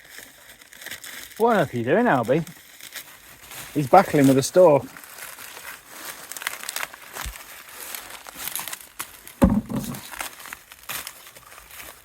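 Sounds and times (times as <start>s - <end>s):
dry maize stalks rustling: 0.0s - 12.0s
dull low thump: 9.4s - 10.0s.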